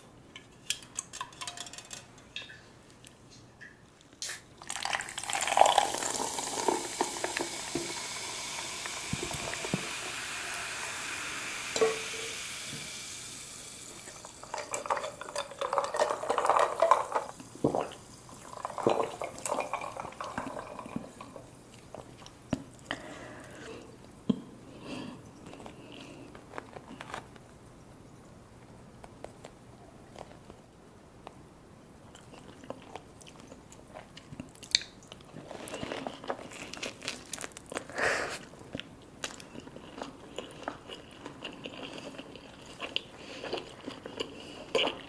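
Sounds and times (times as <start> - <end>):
dishes and cutlery clattering: 0.4 - 2.6
liquid pouring: 4.6 - 21.5.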